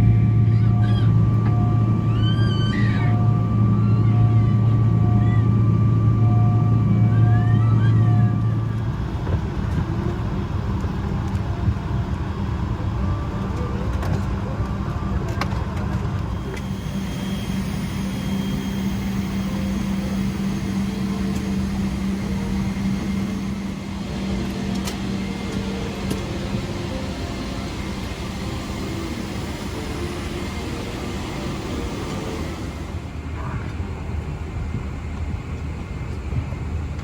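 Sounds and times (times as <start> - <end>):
deeper hum: 0.0 - 36.8
airplane cabin rumble: 0.0 - 37.0.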